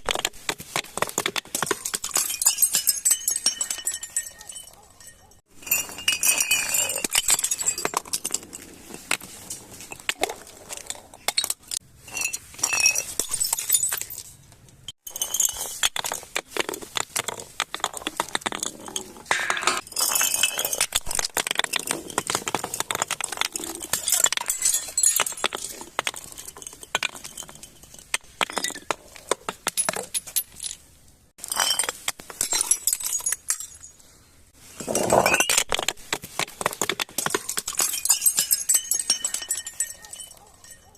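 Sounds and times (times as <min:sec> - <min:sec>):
broken glass clinking and crunching: 0:01.2 - 0:34.0, 0:34.8 - 0:40.9.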